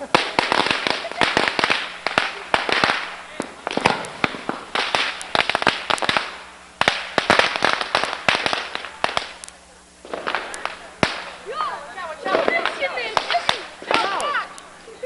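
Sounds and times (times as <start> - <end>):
firecrackers banging: 0.0 - 15.0
excited voices calling out: 10.6 - 15.0.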